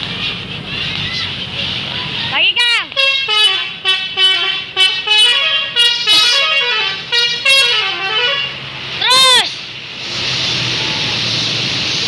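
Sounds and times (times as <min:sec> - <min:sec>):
musical bus horn tune: 0:02.9 - 0:08.7.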